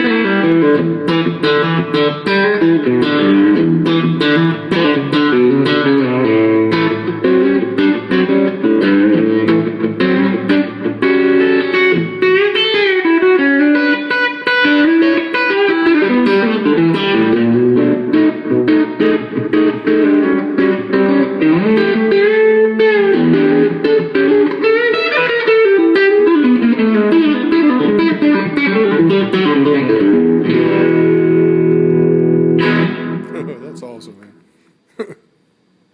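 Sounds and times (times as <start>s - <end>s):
electric guitar lead with string bends: 0.0s - 33.8s.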